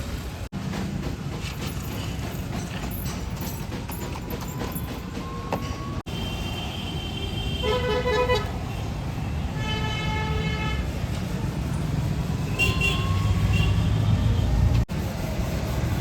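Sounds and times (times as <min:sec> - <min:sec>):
street traffic rumble: 0:00.0 - 0:16.0
vehicle horns honking: 0:06.1 - 0:08.8, 0:12.5 - 0:14.1.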